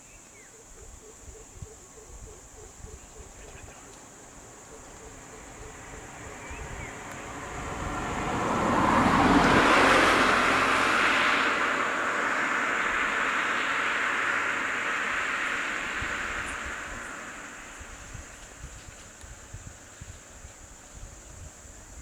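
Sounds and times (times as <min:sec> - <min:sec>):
vehicle passing by: 0:04.4 - 0:18.7.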